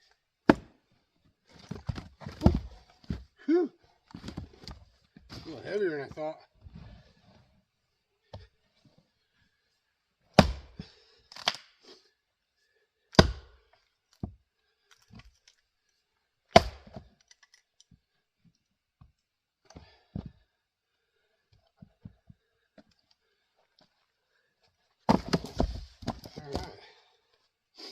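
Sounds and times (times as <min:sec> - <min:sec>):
axe splitting wood: 0:00.5 - 0:00.8, 0:01.6 - 0:02.8, 0:10.4 - 0:11.7, 0:13.1 - 0:13.6, 0:16.5 - 0:17.2, 0:25.1 - 0:26.7.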